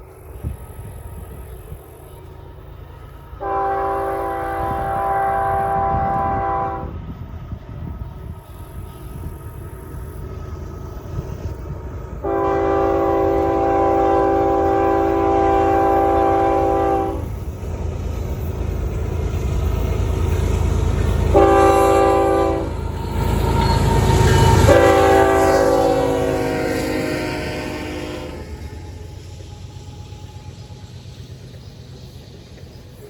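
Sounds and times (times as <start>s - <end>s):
low train rumble: 0.0s - 33.0s
locomotive air horn: 3.4s - 7.0s, 12.2s - 17.4s, 21.3s - 28.7s.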